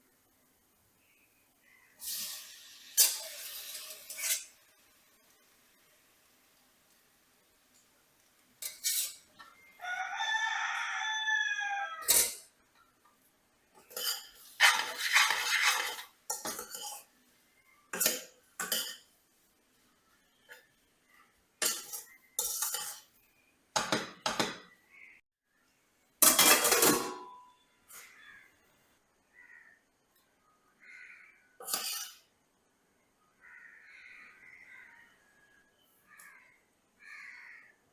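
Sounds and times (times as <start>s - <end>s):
dishes and utensils clattering: 3.0s - 4.6s, 8.6s - 9.6s, 12.0s - 12.6s, 13.8s - 17.1s, 17.9s - 19.2s, 21.6s - 23.2s, 26.2s - 27.5s, 31.6s - 32.3s
rooster crowing: 9.8s - 12.1s.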